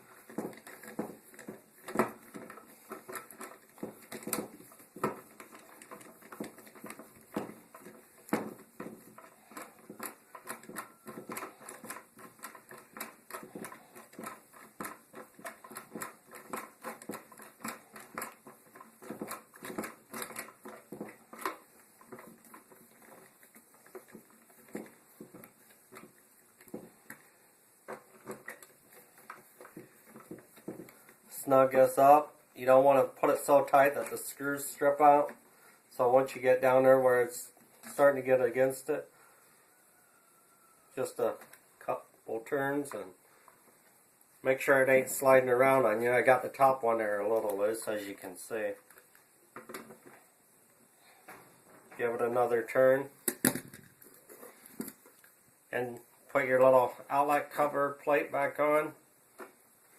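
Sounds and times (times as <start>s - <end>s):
screwdriver clicking and scraping: 0.0s - 31.2s.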